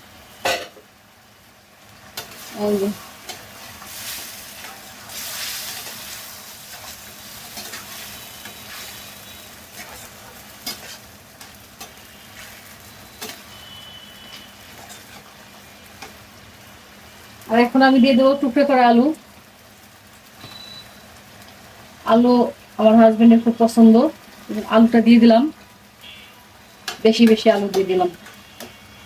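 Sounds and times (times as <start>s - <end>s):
curry sizzling in a pot: 0.0s - 29.0s.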